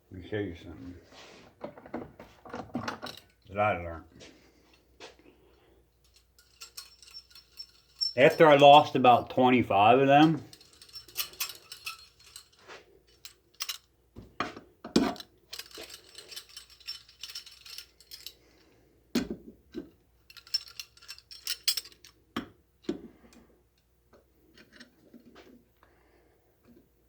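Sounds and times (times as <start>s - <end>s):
small metal tools clinking: 2.8s - 3.5s, 6.0s - 9.2s, 9.8s - 13.9s, 14.9s - 18.8s, 19.7s - 23.4s.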